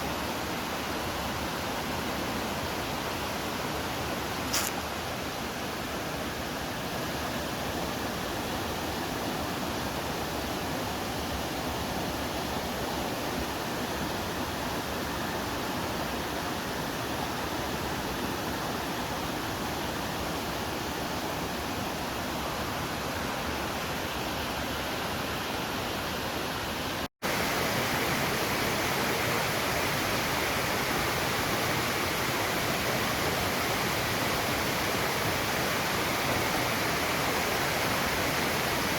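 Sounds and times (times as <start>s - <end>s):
waterfall rushing: 19.3s - 38.9s.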